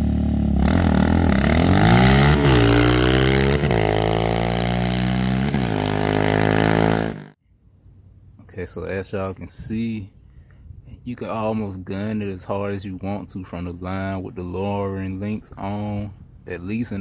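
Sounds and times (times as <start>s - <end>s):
atv engine accelerating: 0.0s - 7.3s.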